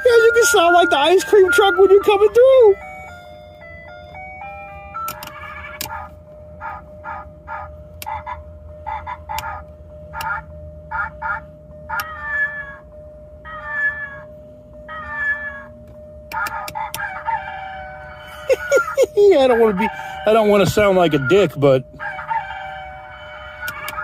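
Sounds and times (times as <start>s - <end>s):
electronic jingle: 0.0s - 5.8s
sharp clicks: 5.0s - 6.0s, 16.3s - 17.0s.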